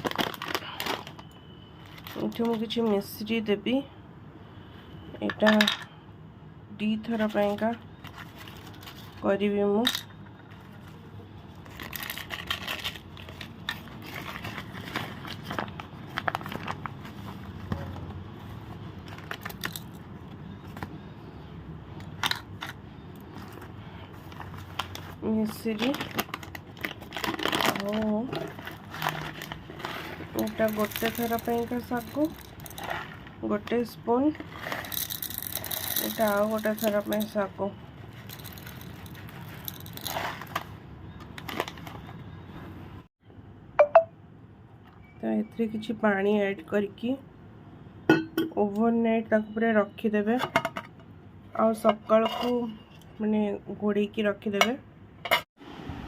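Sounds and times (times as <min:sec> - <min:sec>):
rock sugar clicking and rustling: 0:25.8 - 0:33.4, 0:34.4 - 0:37.4, 0:38.2 - 0:42.0.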